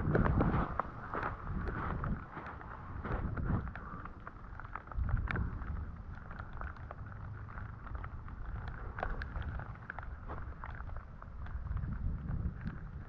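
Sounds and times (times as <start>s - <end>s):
footsteps on desert ground: 0.0s - 7.0s, 8.0s - 12.8s
raindrops ticking: 0.0s - 13.0s
wind rumbling on microphone: 0.0s - 13.0s.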